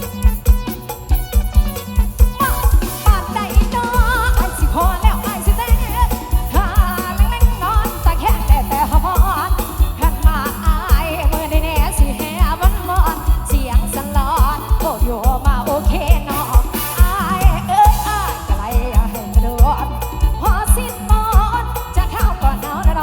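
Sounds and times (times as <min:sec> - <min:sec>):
kick-drum and bass beat: 0:00.0 - 0:23.0.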